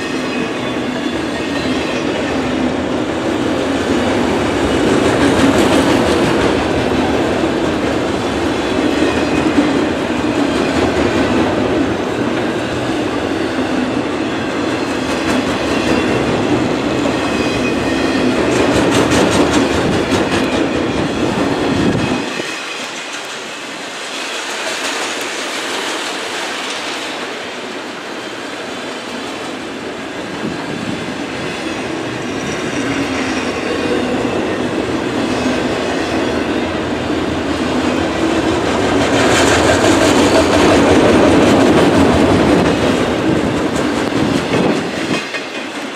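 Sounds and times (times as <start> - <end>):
freight train rolling past: 0.0 - 45.9.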